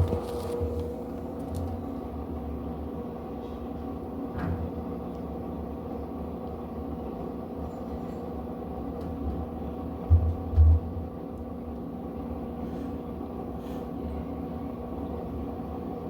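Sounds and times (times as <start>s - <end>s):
washing machine motor hum: 0.0s - 16.0s
washing machine knock: 10.0s - 11.1s.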